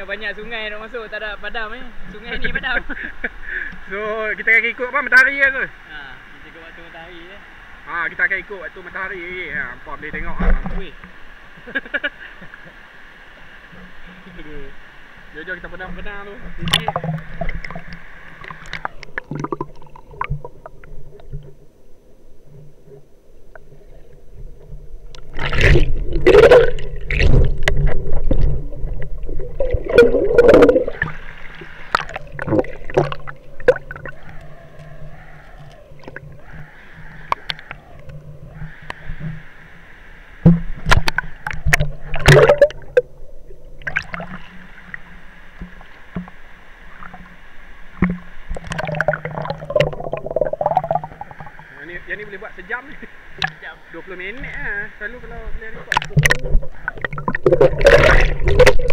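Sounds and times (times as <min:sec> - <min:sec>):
muffled river water gurgling: 0:00.0 - 0:58.9
loud splashing: 0:25.3 - 0:34.1, 0:55.9 - 0:58.9.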